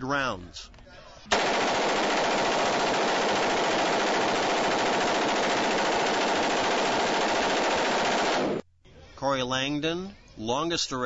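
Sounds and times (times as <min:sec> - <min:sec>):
machine gun firing a long burst: 0:01.3 - 0:08.6.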